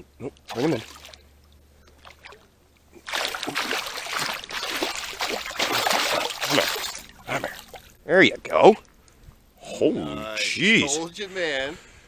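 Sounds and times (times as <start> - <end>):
water splashing and churning: 0.4 - 8.0.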